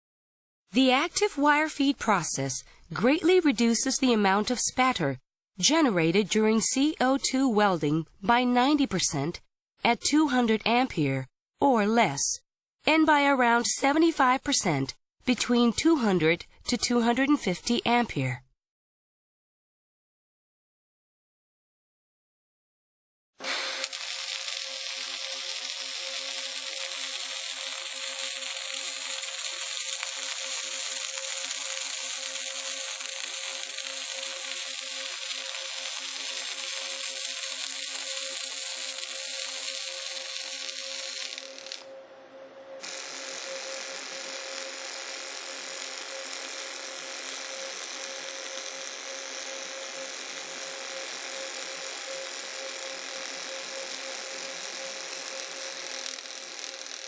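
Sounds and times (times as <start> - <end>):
welding arc hiss and crackle: 23.4 - 41.9, 42.8 - 57.0.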